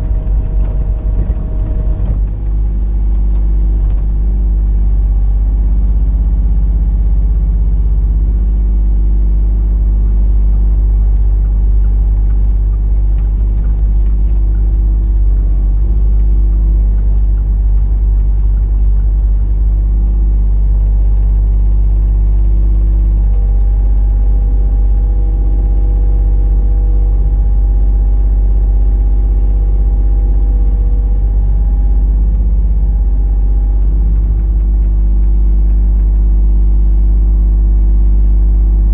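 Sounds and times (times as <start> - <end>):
excavator engine running: 0.0 - 38.9.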